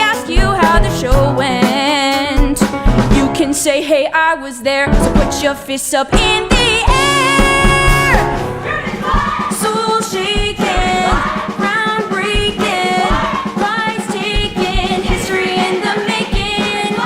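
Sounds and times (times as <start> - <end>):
group singing over backing track: 6.1 - 17.0.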